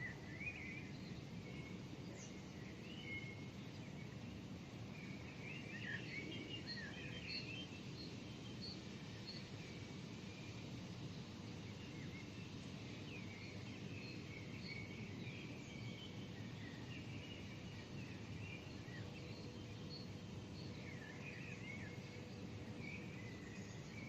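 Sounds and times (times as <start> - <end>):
small birds chirping: 0.0 - 24.0.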